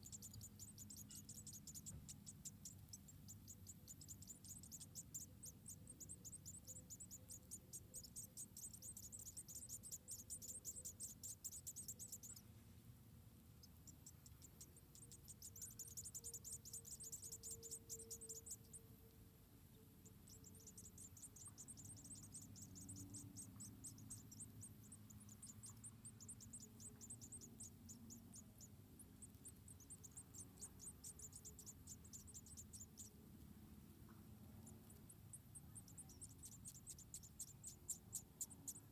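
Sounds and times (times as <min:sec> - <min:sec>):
insects trilling: 0:00.0 - 0:12.5, 0:13.6 - 0:19.1, 0:19.7 - 0:33.4, 0:34.1 - 0:38.9.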